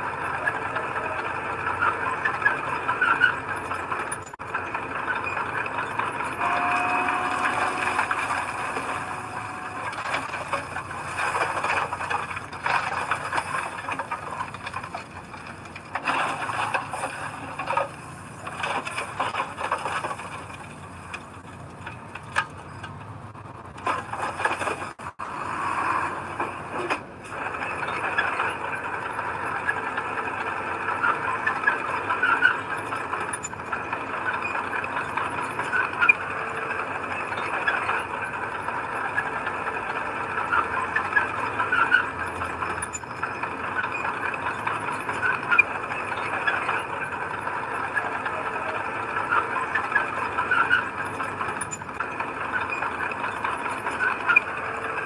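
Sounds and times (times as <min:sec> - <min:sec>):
bulldozer squealing and grinding: 0:00.0 - 0:55.0.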